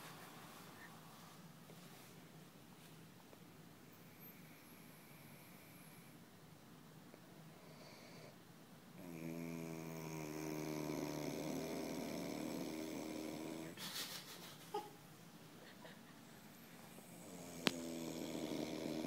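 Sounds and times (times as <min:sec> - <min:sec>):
man snoring: 0:09.0 - 0:13.8, 0:17.1 - 0:19.0.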